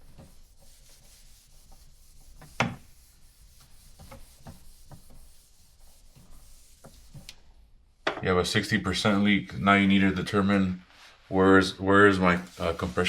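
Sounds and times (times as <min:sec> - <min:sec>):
rubbing and scraping handling noises: 0:00.0 - 0:07.5, 0:10.8 - 0:13.0.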